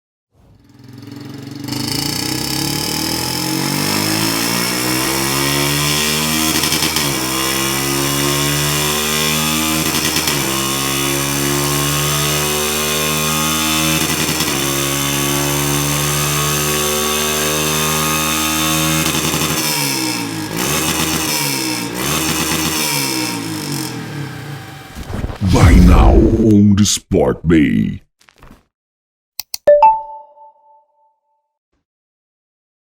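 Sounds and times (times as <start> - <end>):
motorcycle engine idling and revving: 0.5 - 25.0.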